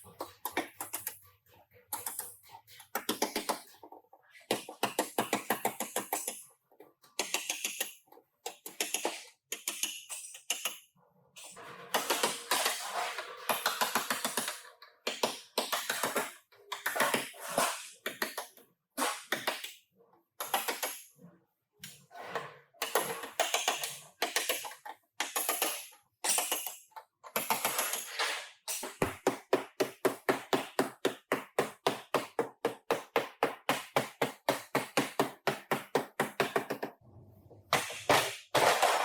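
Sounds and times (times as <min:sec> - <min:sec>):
hammer striking sheet metal: 0:11.6 - 0:14.7.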